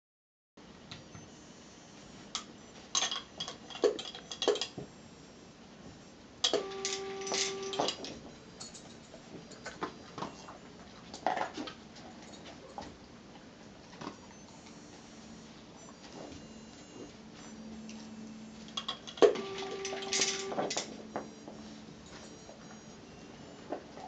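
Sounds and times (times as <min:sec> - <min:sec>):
steady tone: 0:14.2 - 0:23.9.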